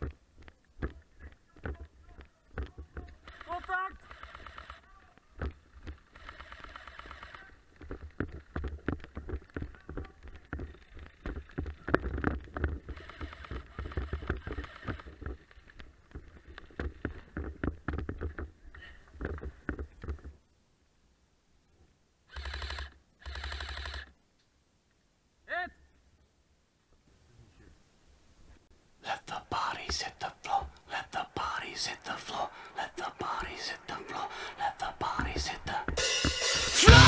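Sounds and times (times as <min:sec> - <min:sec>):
distant shouting: 0:30.4 - 0:37.0.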